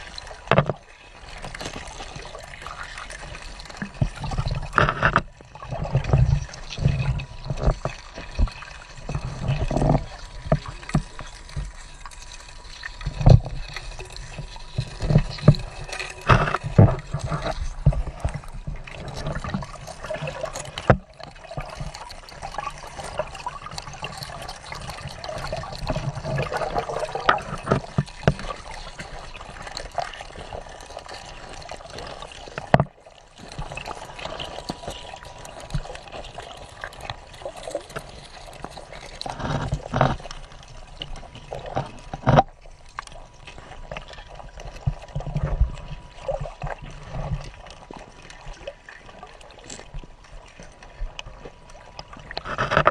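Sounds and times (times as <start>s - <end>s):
water running and splashing: 0.0s - 52.9s.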